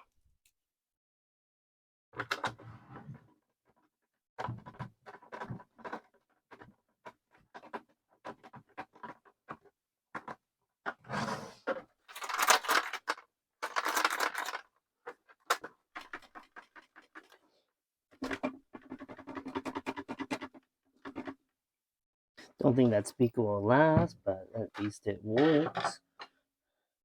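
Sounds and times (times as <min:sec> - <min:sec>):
plastic parts clicking and tapping: 0:04.4 - 0:11.0, 0:11.7 - 0:17.4, 0:18.1 - 0:21.4, 0:24.7 - 0:26.4.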